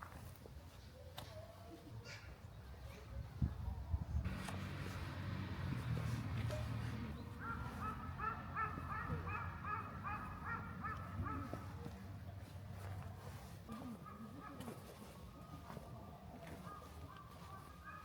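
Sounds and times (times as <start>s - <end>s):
low outdoor rumble: 4.0s - 14.5s.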